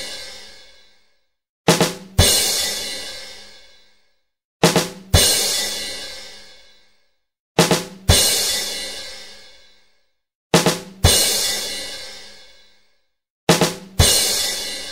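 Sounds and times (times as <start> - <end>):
drum hits: 1.7 - 2.5, 4.6 - 5.4, 7.6 - 8.4, 10.6 - 11.3, 13.5 - 14.4.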